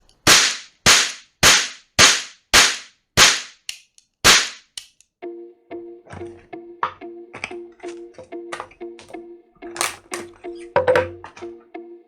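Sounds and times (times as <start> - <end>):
cap revolver cracks: 9.8 - 10.3.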